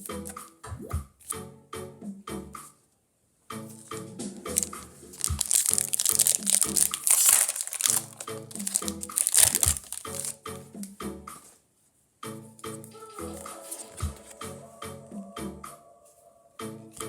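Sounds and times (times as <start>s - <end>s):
background music: 0.0s - 2.8s, 3.5s - 11.6s, 12.2s - 17.0s
foil wrapper crinkling: 4.6s - 10.4s.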